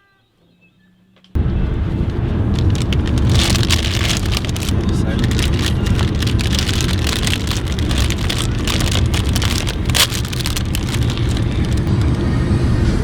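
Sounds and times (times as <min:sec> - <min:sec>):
road noise rumble: 0:01.7 - 0:13.0
rain pattering on a car: 0:02.6 - 0:12.0.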